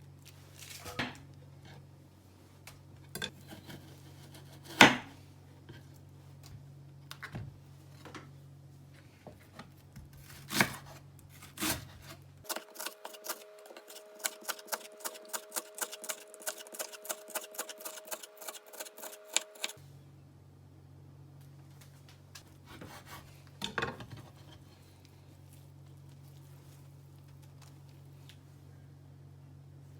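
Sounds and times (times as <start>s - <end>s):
knife chopping on cutting board: 11.5s - 19.7s.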